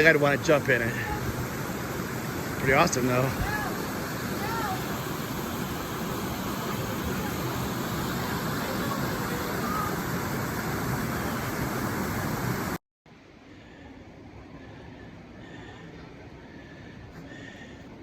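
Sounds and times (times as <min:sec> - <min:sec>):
creek water rushing: 0:00.0 - 0:12.8.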